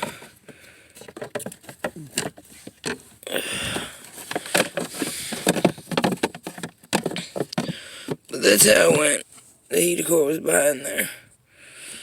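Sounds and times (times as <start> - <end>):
hands handling dashboard and camera: 0.0 - 9.1
rustling scrape: 0.0 - 9.7.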